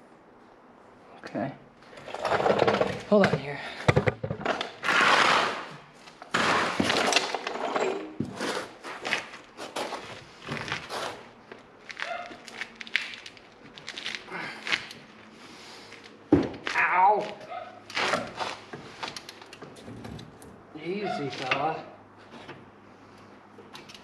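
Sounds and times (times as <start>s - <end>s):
tool scraping: 4.4s - 11.3s.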